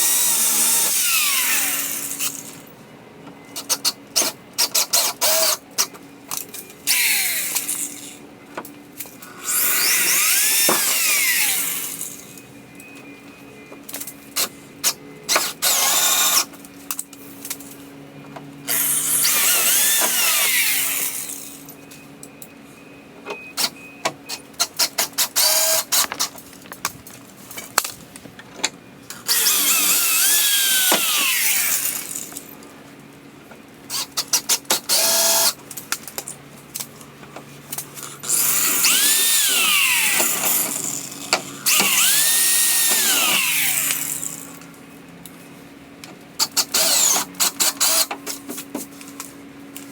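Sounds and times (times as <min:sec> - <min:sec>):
power drill drilling metal: 0:00.0 - 0:02.6, 0:09.4 - 0:12.2, 0:18.7 - 0:21.6, 0:29.2 - 0:32.4, 0:33.9 - 0:35.6, 0:38.2 - 0:44.6, 0:46.4 - 0:48.1.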